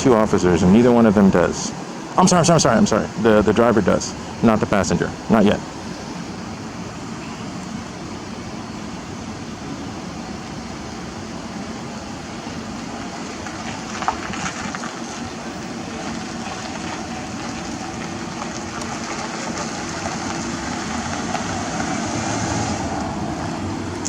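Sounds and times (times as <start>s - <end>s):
vehicle passing by: 18.7s - 24.0s.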